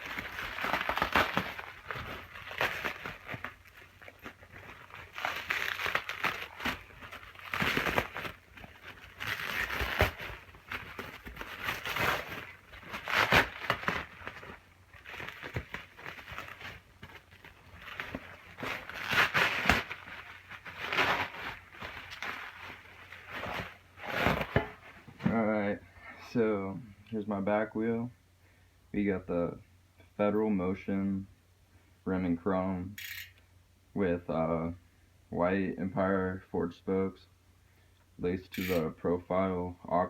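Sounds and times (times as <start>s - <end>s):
plastic packaging crinkling: 0.0s - 25.1s.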